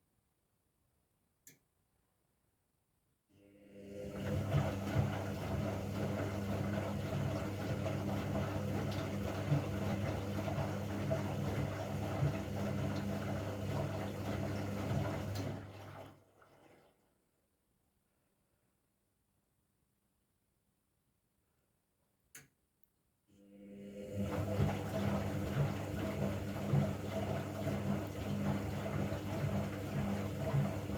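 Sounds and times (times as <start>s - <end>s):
washing machine motor hum: 3.4s - 17.0s, 23.4s - 30.9s.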